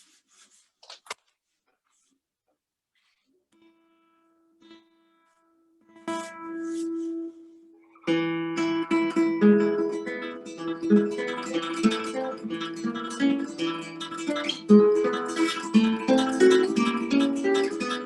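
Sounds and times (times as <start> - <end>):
solo guitar waltz: 3.6 - 18.0.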